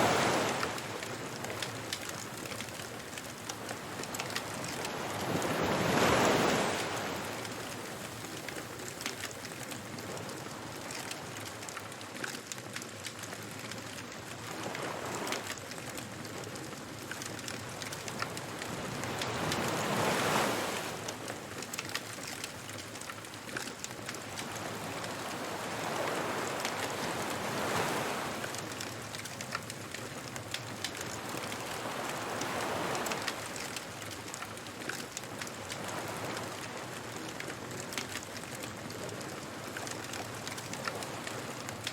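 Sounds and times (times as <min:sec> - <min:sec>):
surf washing onto beach: 0:00.0 - 0:08.9, 0:14.5 - 0:15.6, 0:17.6 - 0:22.1, 0:24.0 - 0:41.9
bonfire crackling and popping: 0:00.2 - 0:41.9.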